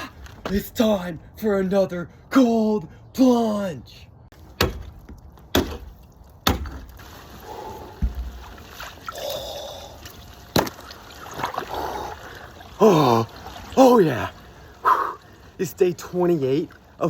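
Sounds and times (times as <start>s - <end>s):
water sloshing and trickling: 4.4s - 17.0s
low thump: 8.0s - 8.4s.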